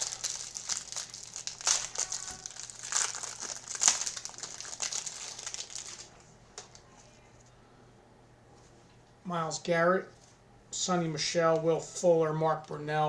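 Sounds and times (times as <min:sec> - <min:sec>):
packaging crinkling: 0:00.0 - 0:06.8.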